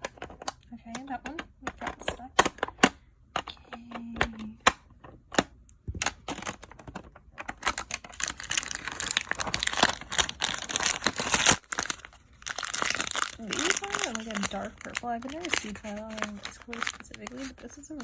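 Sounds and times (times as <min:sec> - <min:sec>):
plastic packaging crinkling: 0:05.9 - 0:18.0.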